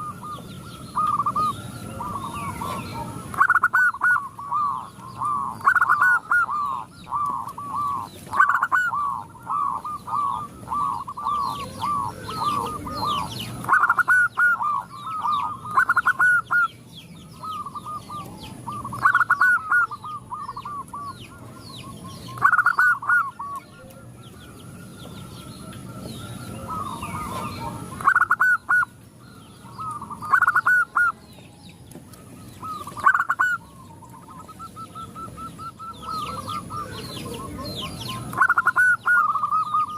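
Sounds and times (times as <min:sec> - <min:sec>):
doves cooing: 0:00.0 - 0:39.9.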